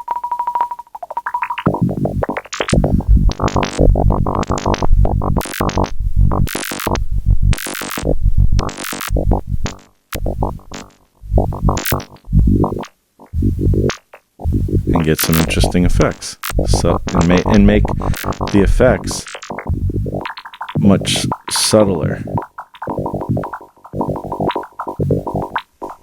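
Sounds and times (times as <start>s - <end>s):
noisy synth bursts: 1.8s - 26.0s
modular synthesizer beeps and bleeps: 8.0s - 21.1s, 22.2s - 26.0s.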